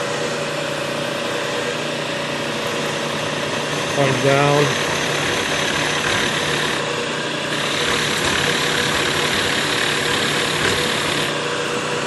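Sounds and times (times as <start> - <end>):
milling machine motor hum: 0.0 - 12.0
cutter cutting metal hiss: 2.7 - 6.8, 7.5 - 11.4.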